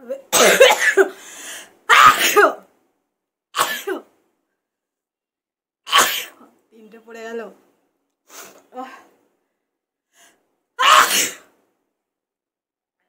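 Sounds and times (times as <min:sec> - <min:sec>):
woman sneezing: 0:00.3 - 0:01.0, 0:10.8 - 0:11.5.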